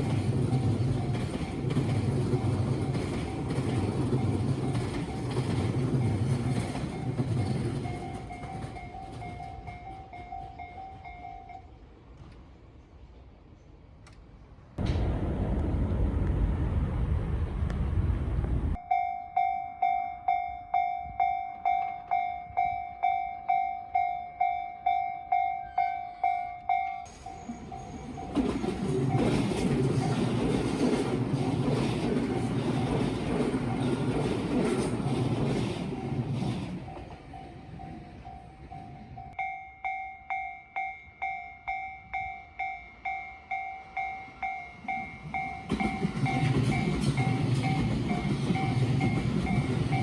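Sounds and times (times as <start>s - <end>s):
level-crossing alarm ringing: 0.0s - 11.8s, 35.5s - 50.0s
train rumble: 0.0s - 18.9s, 26.2s - 39.5s, 42.1s - 50.0s
loud rumble: 14.8s - 18.8s.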